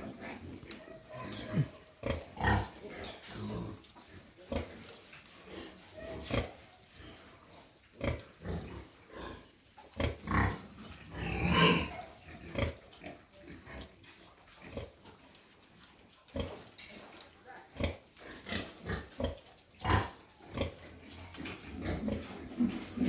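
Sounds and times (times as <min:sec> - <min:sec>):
pigs grunting: 0:00.0 - 0:04.8, 0:08.0 - 0:14.0, 0:17.8 - 0:23.0.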